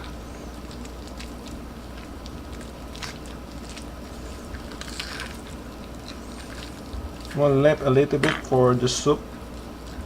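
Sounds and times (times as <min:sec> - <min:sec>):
wet tearing of chicken: 0:00.0 - 0:07.6
steady low hum: 0:00.0 - 0:10.0.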